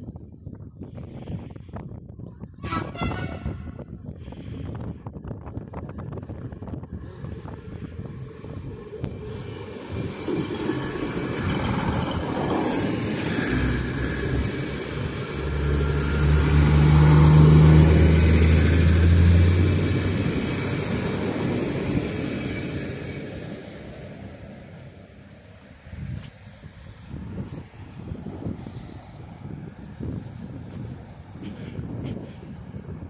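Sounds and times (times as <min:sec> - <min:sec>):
diesel engines low drone: 0:00.0 - 0:33.0
train wheel rumble: 0:05.7 - 0:26.6.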